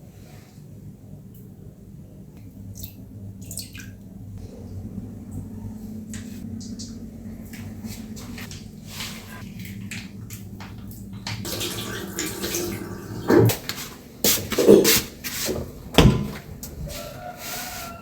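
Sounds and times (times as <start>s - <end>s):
water running: 2.6s - 16.6s.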